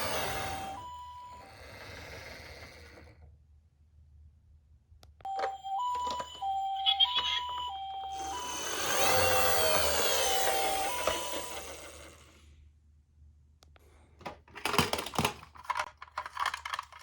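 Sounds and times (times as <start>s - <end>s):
toy electronic two-tone siren: 0.0s - 2.3s, 5.3s - 12.2s
toy wheels rolling on cardboard: 0.0s - 3.2s, 8.1s - 12.4s, 14.6s - 17.0s
toy clicks: 5.3s - 12.2s, 14.9s - 17.0s.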